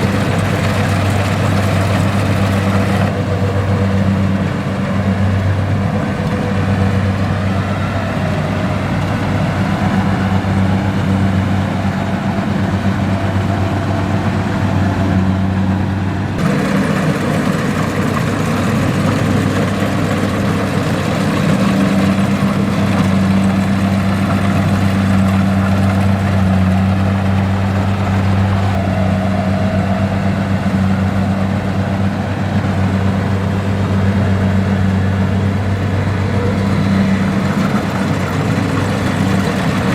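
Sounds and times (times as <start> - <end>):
combine harvester engine droning: 0.0 - 39.9.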